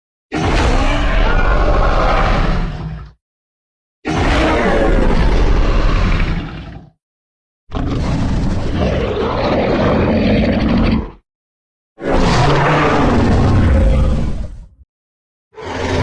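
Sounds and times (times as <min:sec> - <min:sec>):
dinosaur roaring and growling: 0:00.3 - 0:03.2, 0:04.0 - 0:07.0, 0:07.7 - 0:11.2, 0:12.0 - 0:14.8, 0:15.6 - 0:16.0.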